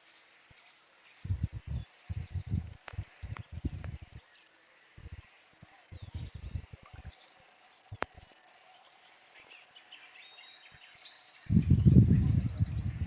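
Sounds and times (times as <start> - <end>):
faint bird chirps: 0.1 - 13.0
soft low thumps: 1.2 - 4.2.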